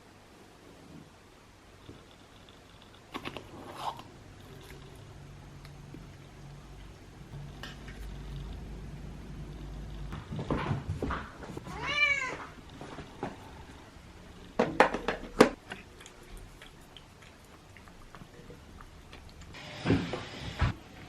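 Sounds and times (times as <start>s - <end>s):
cat meowing: 11.6s - 12.5s.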